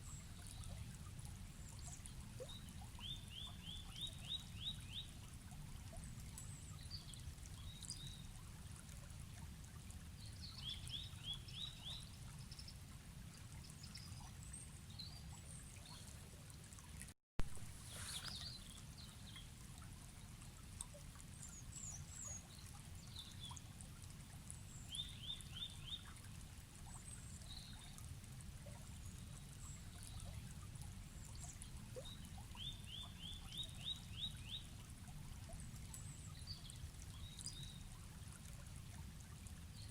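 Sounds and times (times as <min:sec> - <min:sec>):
river flowing: 0:17.5 - 0:19.7.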